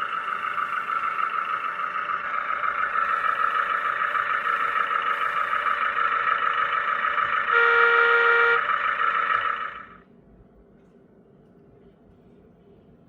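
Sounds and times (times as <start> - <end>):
hydraulic pump whining: 0.0 - 10.0
horn-like tone: 7.4 - 8.8.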